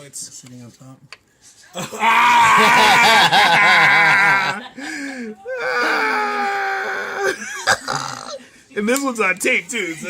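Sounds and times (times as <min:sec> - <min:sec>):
person wailing: 0:01.9 - 0:04.6, 0:05.5 - 0:08.4.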